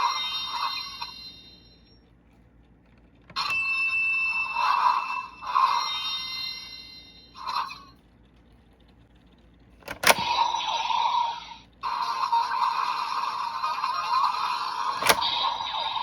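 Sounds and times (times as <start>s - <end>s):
electronic bell-like chiming: 0.0s - 2.0s, 3.4s - 7.8s.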